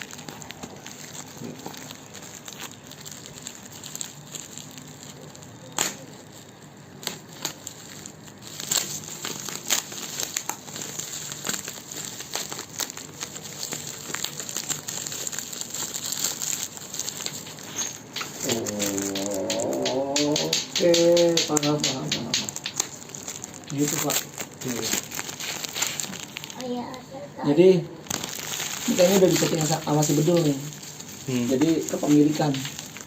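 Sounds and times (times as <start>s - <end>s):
plastic packaging crinkling: 0.0s - 27.2s, 28.0s - 33.0s
sharp plastic snaps: 5.8s - 6.1s, 18.1s - 23.8s.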